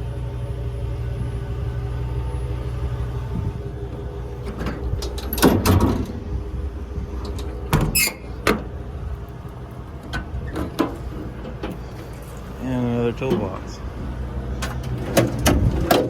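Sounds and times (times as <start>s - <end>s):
steady low hum: 0.0s - 15.8s
metal doors clattering: 4.3s - 6.3s, 7.2s - 8.8s, 10.0s - 12.3s, 13.1s - 16.0s.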